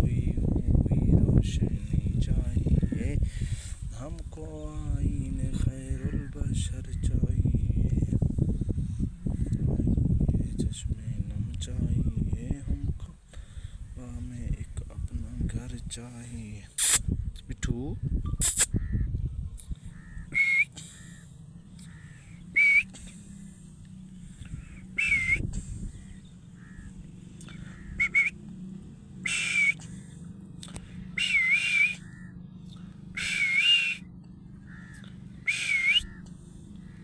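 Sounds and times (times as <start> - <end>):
parrot whistling: 20.0 - 20.7, 22.6 - 22.9, 24.6 - 25.5, 27.7 - 28.4, 29.2 - 29.8, 31.2 - 32.2, 33.2 - 34.1, 35.4 - 36.2.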